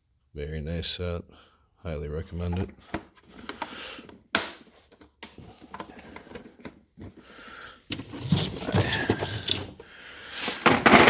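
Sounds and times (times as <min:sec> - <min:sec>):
tool case scraping and clunking: 0:04.6 - 0:07.3, 0:07.9 - 0:11.0.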